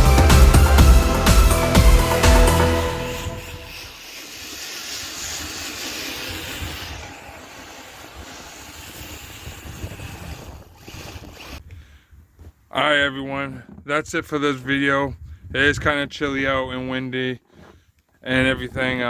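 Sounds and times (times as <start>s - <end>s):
wind buffeting microphone: 8.8s - 12.4s.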